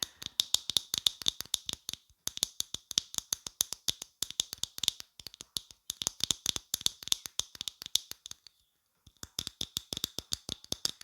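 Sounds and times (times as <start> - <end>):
rapid finger tapping: 0.0 - 8.5, 9.1 - 11.0.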